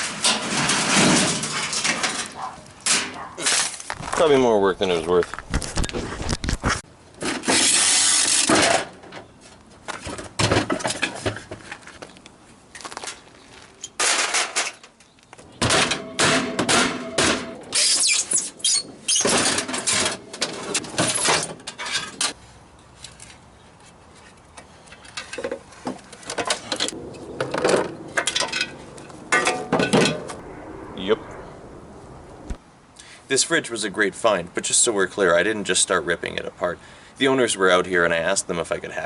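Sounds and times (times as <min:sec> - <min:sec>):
scrap metal scraping and clanking: 0:00.0 - 0:04.2, 0:15.6 - 0:22.4, 0:24.2 - 0:30.4.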